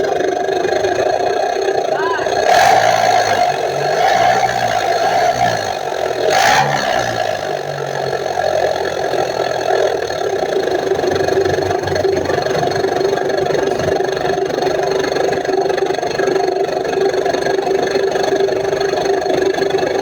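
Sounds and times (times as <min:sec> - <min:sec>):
pickup engine growling and revving: 0:00.0 - 0:20.0.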